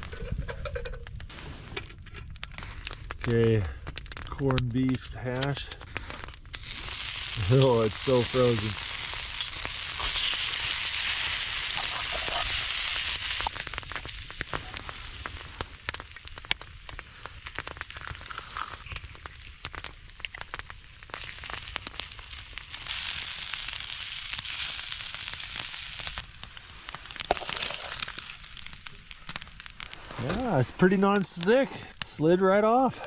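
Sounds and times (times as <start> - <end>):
food sizzling in a skillet: 6.5 - 31.5.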